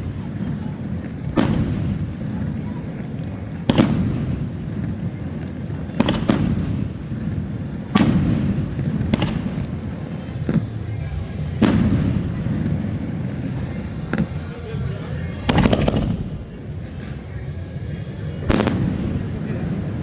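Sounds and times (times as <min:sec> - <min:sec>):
distant firework bursts: 0:00.0 - 0:20.0
fireworks bangs: 0:00.0 - 0:20.0
low echo rumble: 0:00.0 - 0:20.0.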